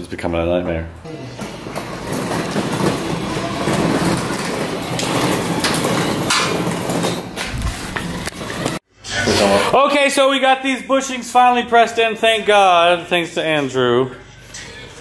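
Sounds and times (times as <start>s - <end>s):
metallic clattering and knocking: 1.4s - 8.8s.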